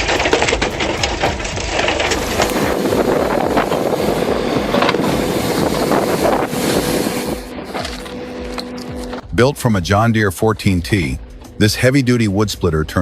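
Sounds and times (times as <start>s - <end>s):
machine engine running: 0.0s - 9.4s.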